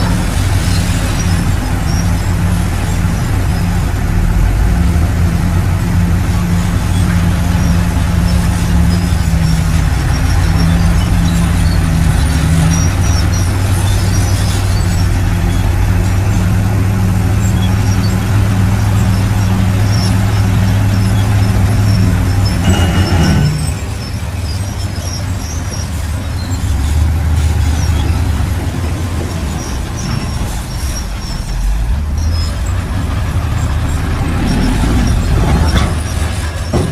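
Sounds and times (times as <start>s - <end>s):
bulldozer diesel engine humming: 0.0s - 36.9s
short high squeaks: 6.9s - 16.2s, 17.4s - 28.5s.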